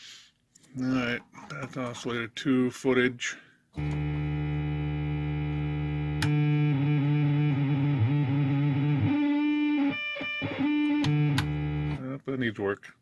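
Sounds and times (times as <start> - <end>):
synthesizer buzzy drone: 3.8 - 12.0
click: 6.2 - 6.4, 11.0 - 11.5.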